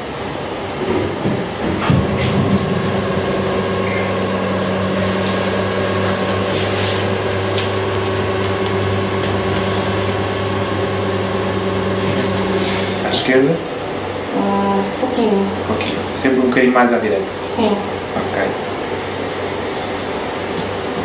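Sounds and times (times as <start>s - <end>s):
small motor humming: 1.9s - 16.3s.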